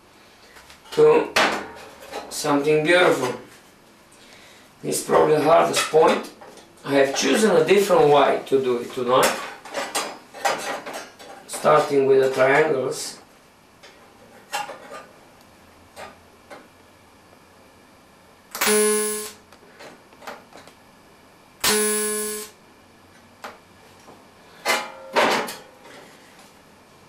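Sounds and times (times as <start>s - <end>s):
buzzing welding arc: 18.5s - 19.4s, 21.6s - 22.6s.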